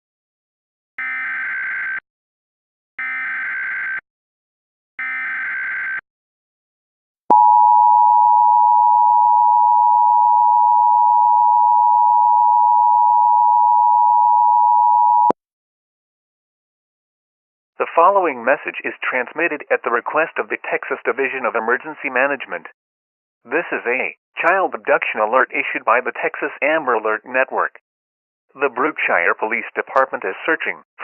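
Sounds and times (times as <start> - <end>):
two-tone attention signal: 7.3 - 15.4.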